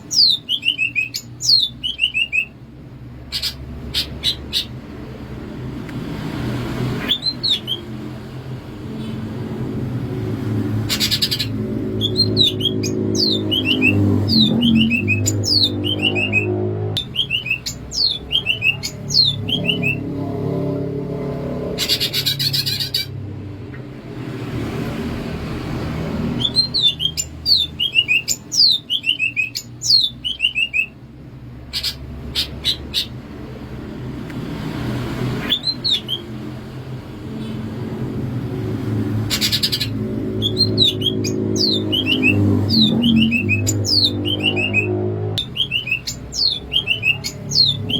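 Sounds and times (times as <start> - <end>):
bird whistling song: 0.0 - 2.6, 3.3 - 4.8, 7.0 - 8.0, 10.9 - 20.1, 21.8 - 23.1, 26.4 - 31.0, 35.4 - 36.4, 39.3 - 47.9
bird buzzy chattering: 10.7 - 20.6, 21.2 - 23.2, 39.1 - 47.9.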